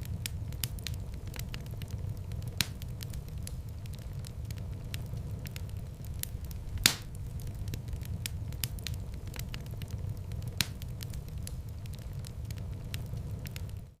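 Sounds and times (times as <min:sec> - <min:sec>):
wood fire crackling: 0:00.0 - 0:14.0
sharp loud pop: 0:06.9 - 0:07.1.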